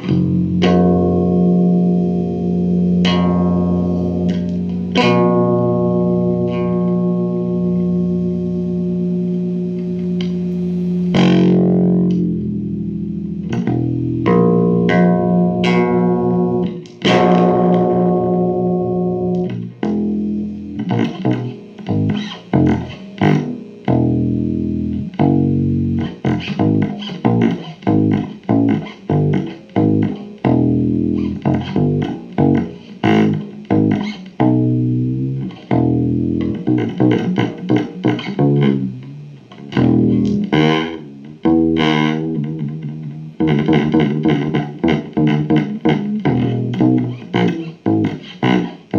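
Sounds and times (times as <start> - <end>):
guitar music with effects: 0.0 - 48.9.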